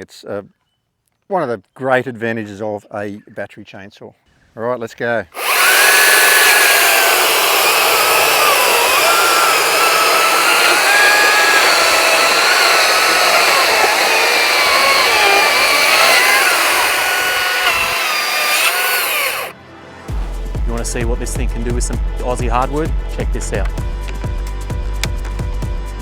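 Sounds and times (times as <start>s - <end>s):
battery chainsaw cutting log: 5.4s - 19.5s.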